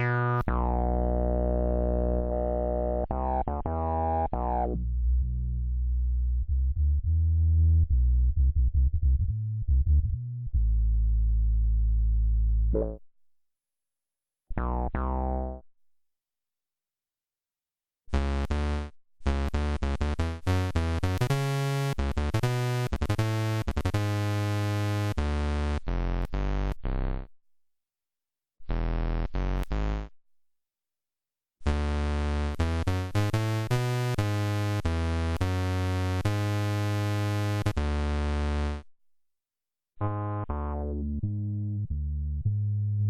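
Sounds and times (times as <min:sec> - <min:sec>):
synthesizer notes and chords: 0:00.0 - 0:08.4, 0:12.6 - 0:13.0, 0:40.0 - 0:43.0.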